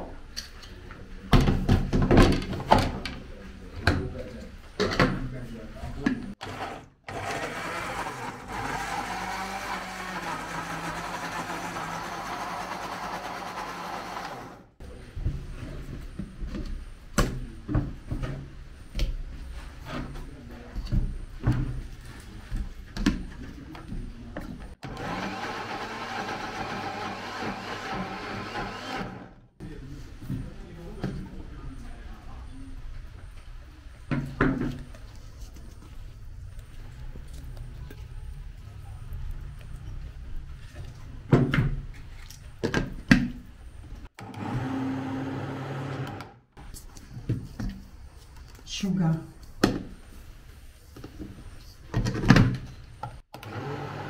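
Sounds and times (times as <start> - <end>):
electric blender running: 6.4 - 14.7, 24.8 - 29.4, 44.2 - 46.3, 53.4 - 54.0.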